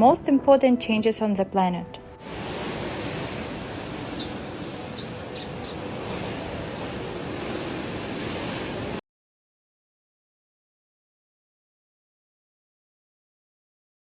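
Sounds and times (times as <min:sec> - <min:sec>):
storm wind: 0:02.2 - 0:09.0
surf: 0:02.2 - 0:09.0.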